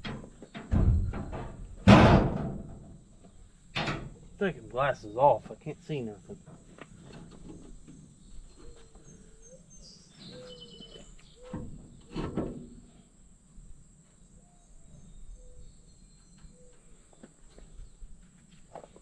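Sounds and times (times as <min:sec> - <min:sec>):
bird chirps: 0:07.5 - 0:11.6.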